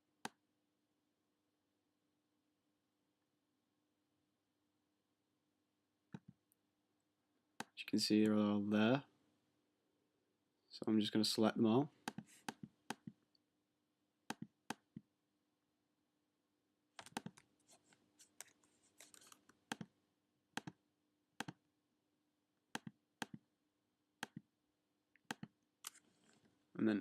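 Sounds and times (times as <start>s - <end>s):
mouse and keyboard clicks: 17.0s - 17.5s, 20.6s - 20.8s.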